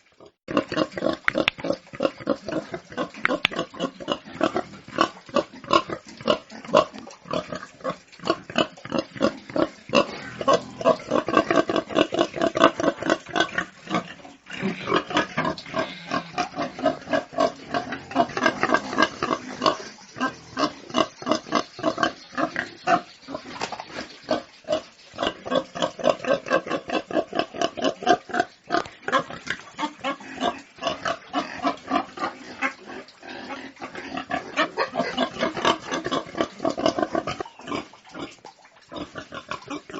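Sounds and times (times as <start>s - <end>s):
pigs grunting: 0.1s - 39.9s.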